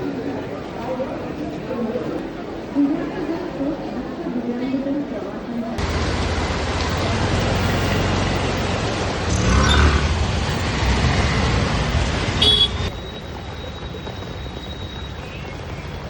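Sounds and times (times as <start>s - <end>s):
traffic on wet road: 5.8s - 16.0s.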